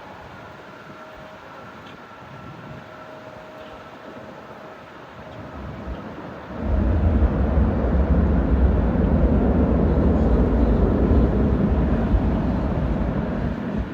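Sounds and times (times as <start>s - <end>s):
jet engines rumbling: 4.5s - 13.9s.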